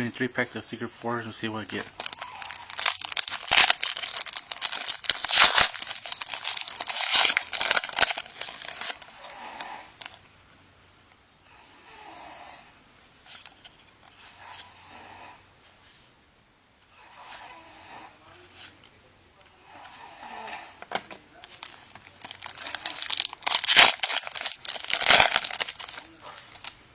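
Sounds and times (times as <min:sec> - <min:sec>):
foil wrapper tearing and crinkling: 0:01.7 - 0:09.1, 0:21.6 - 0:26.8.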